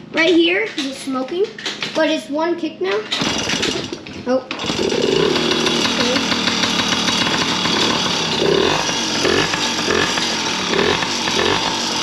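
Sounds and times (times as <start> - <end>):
dirt bike engine running: 3.1 - 12.0.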